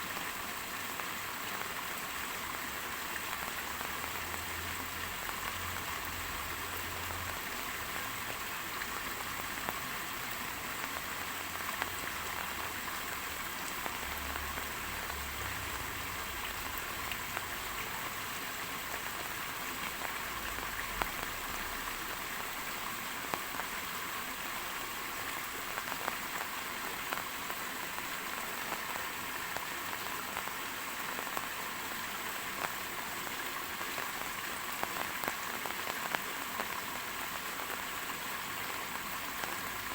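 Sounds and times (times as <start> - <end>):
rain falling: 0.0 - 39.9.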